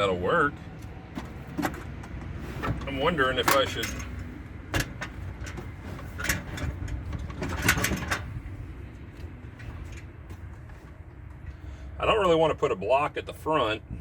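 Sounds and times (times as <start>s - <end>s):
toolbox knocking and scraping: 1.1s - 8.4s.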